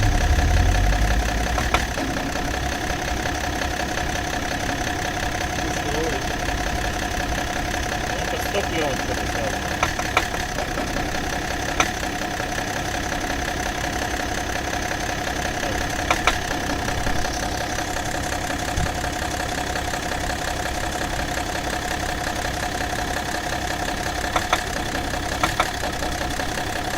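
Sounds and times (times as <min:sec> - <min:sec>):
sharp engine knock: 0:00.0 - 0:04.1, 0:09.5 - 0:12.9, 0:15.2 - 0:17.2, 0:24.0 - 0:26.9
diesel engine idling: 0:00.0 - 0:26.9.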